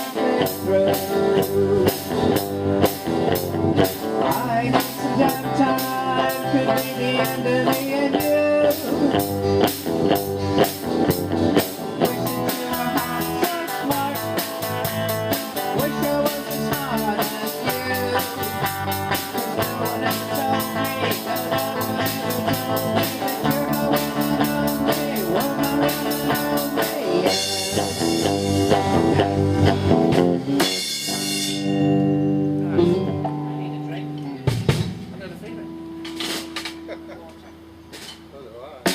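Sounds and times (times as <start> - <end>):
rock band playing: 0.0 - 38.9.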